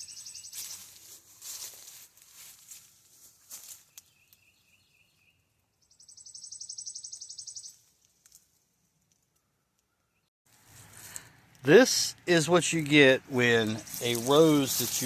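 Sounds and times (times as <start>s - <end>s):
bird trilling: 0.0s - 0.8s, 5.9s - 7.8s
faint outdoor ambience: 9.4s - 15.0s.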